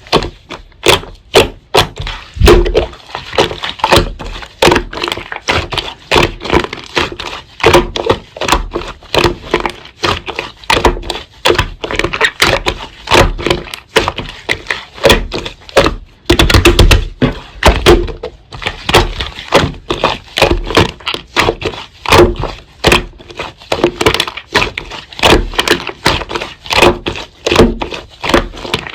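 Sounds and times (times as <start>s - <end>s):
slime squeezed by hand popping: 0.9s - 6.5s.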